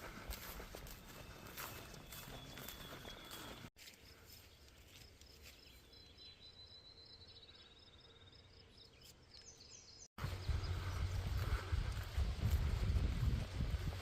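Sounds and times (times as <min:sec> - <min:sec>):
songbird chirping and trilling: 0:00.2 - 0:12.1
low rumble: 0:10.2 - 0:14.0.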